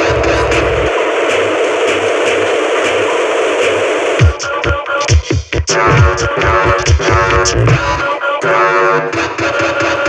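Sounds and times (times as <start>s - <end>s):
drum machine kick thumping: 4.2s - 8.0s.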